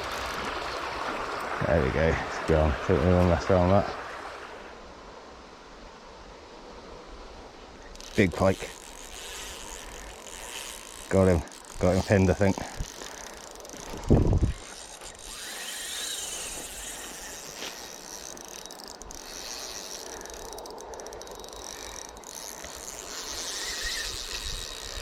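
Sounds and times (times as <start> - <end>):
fishing reel whirring and clicking: 0.0 - 1.5, 7.9 - 25.0.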